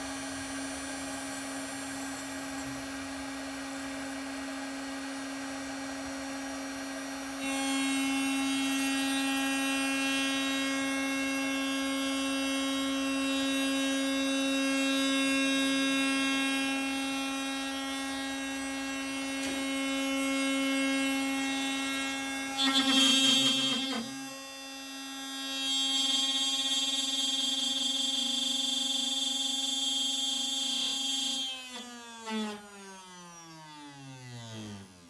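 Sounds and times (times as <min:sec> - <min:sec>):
router spindle whine: 0:00.0 - 0:35.0
bit cutting wood: 0:07.4 - 0:35.0.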